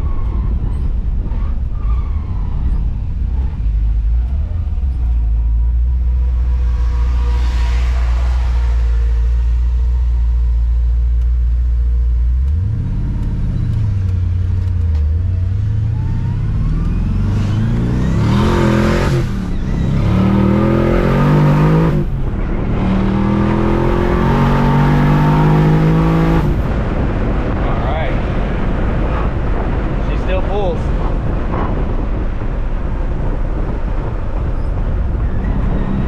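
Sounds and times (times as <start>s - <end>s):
car engine revving and accelerating: 3.1s - 11.4s, 12.3s - 27.6s.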